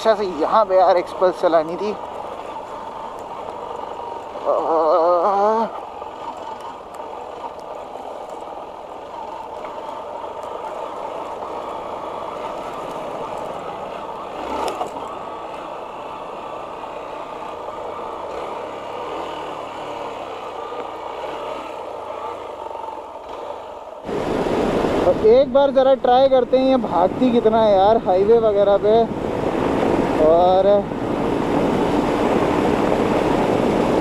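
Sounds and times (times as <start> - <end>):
motorcycle engine running: 0.0 - 34.0
wind noise on microphone: 24.1 - 25.3, 26.9 - 34.0.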